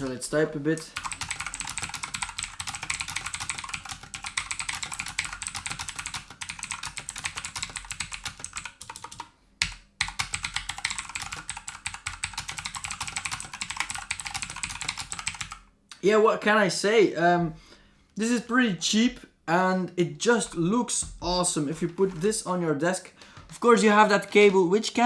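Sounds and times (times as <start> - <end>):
fast typing on mechanical keyboard: 0.8 - 15.6.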